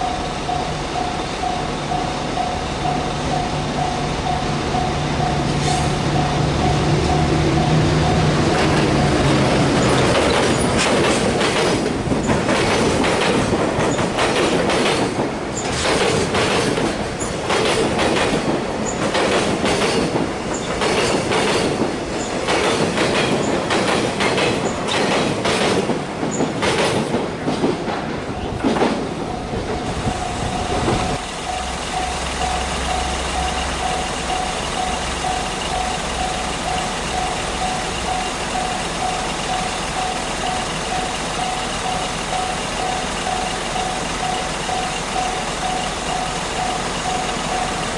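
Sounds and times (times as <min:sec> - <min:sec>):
crossing warning bell ringing: 0:00.0 - 0:11.5, 0:29.1 - 0:47.9
train wheels clacking on rails: 0:00.0 - 0:47.9.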